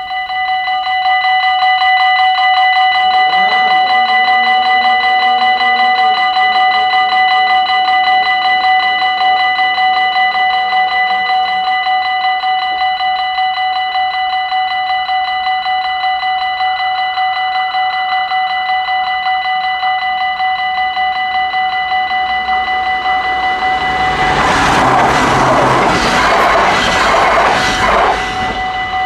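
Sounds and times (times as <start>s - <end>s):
level crossing warning bell: 0.0s - 29.0s
train rumbling: 21.0s - 29.0s.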